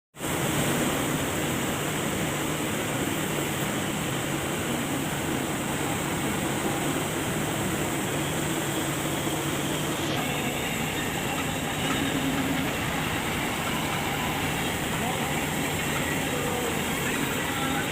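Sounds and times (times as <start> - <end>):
heavy diesel machinery running: 1.7 - 17.9.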